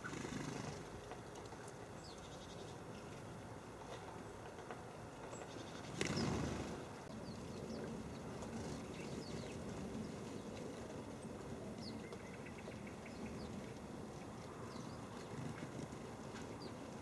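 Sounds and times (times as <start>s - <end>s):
outdoor background noise: 0.0s - 17.0s
small birds chirping: 1.9s - 2.9s, 5.2s - 10.6s, 11.2s - 17.0s.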